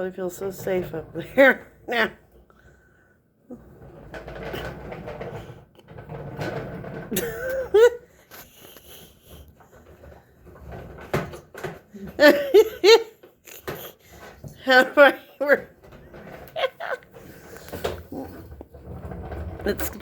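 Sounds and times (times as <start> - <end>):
person laughing: 7.2 - 9.4, 12.2 - 13.6, 16.6 - 17.1
rustling and handling noise: 15.6 - 20.0.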